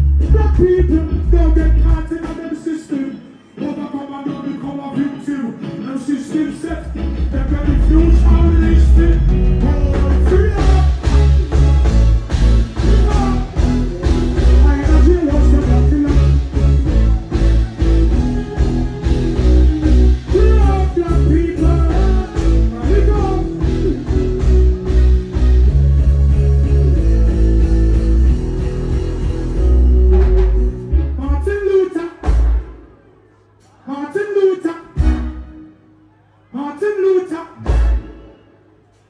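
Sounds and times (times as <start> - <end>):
live reggae band music: 0.0 - 39.0
man singing: 0.2 - 24.9, 31.1 - 32.3, 33.7 - 35.2.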